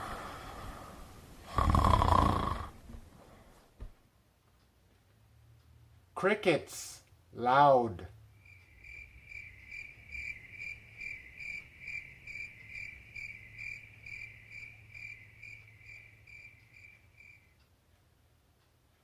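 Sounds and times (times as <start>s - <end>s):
cricket chirping: 8.3s - 17.6s.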